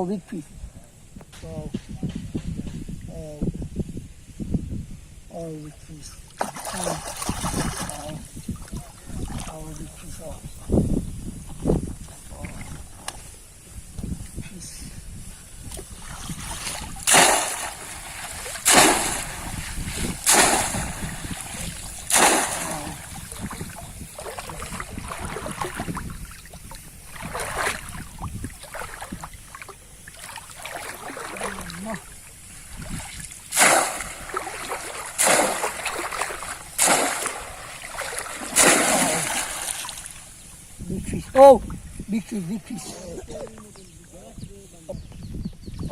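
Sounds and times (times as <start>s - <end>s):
trap splashing in muddy water: 6.4s - 9.8s, 15.7s - 40.4s.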